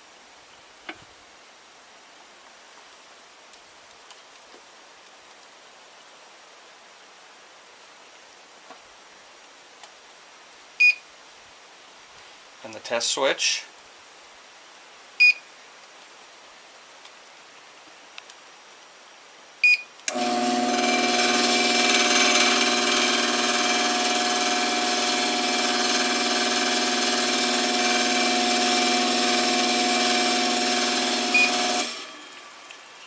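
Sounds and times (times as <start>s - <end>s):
short high beeps: 10.8s - 11.0s, 15.2s - 15.4s, 19.6s - 19.9s
garage door opener motor running: 20.1s - 33.0s.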